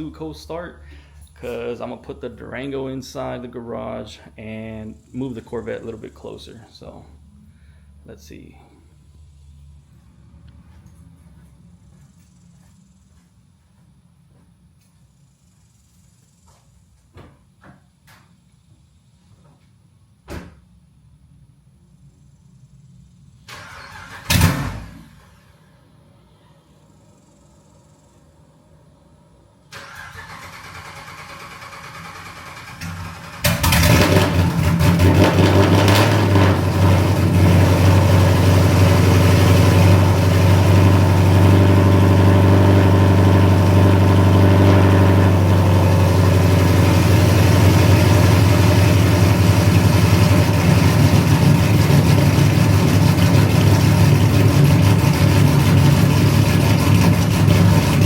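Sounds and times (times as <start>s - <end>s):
car engine starting and idling: 23.3s - 26.0s, 29.5s - 58.0s.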